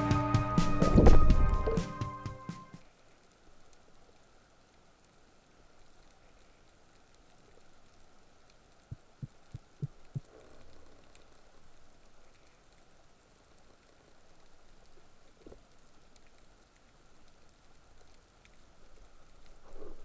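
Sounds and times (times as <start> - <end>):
underwater hiss: 0.0 - 2.8
tiny ticks: 5.8 - 20.0.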